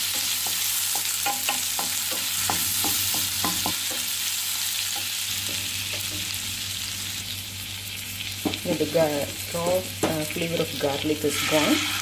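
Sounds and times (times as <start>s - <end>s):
garlic sizzling in butter: 0.0s - 12.0s
spatula scraping pan: 11.2s - 12.0s.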